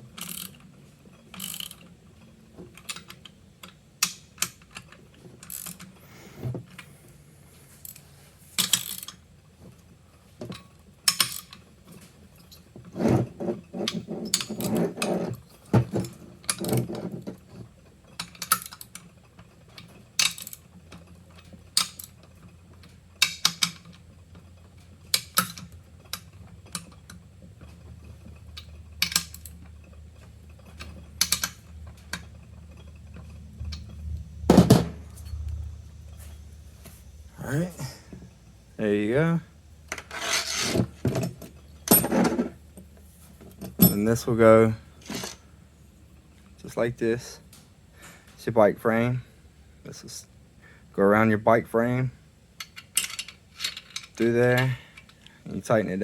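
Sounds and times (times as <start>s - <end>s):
wrench and metal parts clicking: 0.1s - 1.9s, 2.7s - 6.0s, 8.6s - 9.2s, 10.5s - 11.6s, 13.7s - 15.3s, 18.0s - 35.6s, 52.6s - 55.4s.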